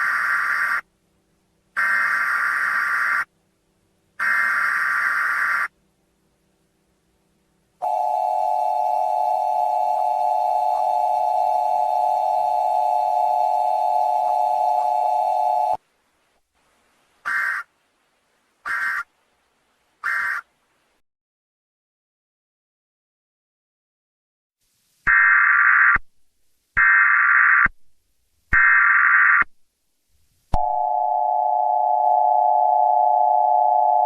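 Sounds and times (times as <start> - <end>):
steady attention tone: 7.8 - 15.8, 30.5 - 34.0.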